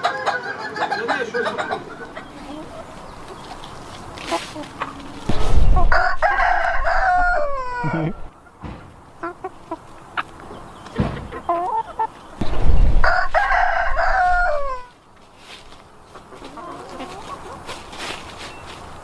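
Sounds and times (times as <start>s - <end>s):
rooster clucking: 0.0s - 14.9s, 16.1s - 17.8s
rooster crowing: 5.8s - 8.3s, 13.0s - 14.9s.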